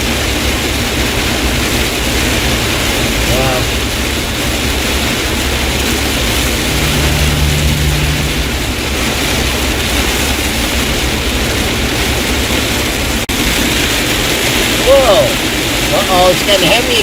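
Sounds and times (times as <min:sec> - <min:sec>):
heavy rain on a car: 0:00.0 - 0:06.5, 0:09.9 - 0:17.0
tyres on a wet road: 0:00.0 - 0:17.0
low hum: 0:05.9 - 0:09.9.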